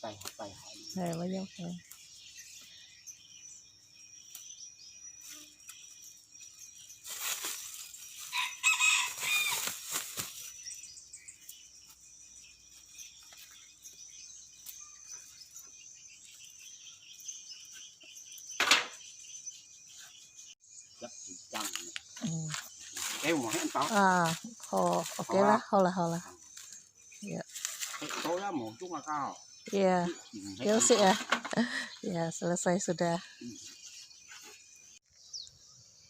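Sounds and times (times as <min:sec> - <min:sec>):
rooster crowing: 0:08.3 - 0:09.6.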